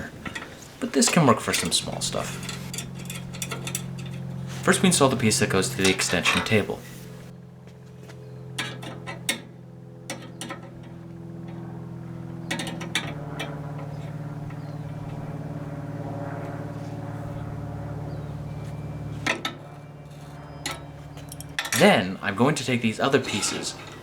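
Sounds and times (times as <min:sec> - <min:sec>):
steady low hum: 0:00.0 - 0:24.0
metal parts clinking: 0:00.2 - 0:07.0, 0:12.5 - 0:13.2, 0:20.1 - 0:22.0.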